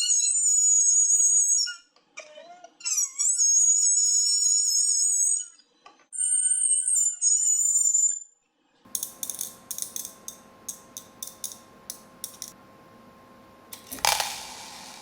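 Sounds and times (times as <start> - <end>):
sharp mechanical clicks: 8.9 - 12.6
steady hum: 8.9 - 15.0
loud hiss: 13.7 - 15.0.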